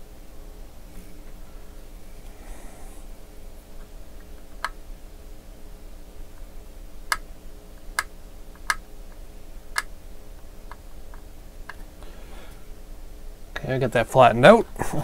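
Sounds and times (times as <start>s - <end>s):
faint steady hum: 0.0s - 15.0s
hand tool clicking on circuit board: 8.0s - 8.8s.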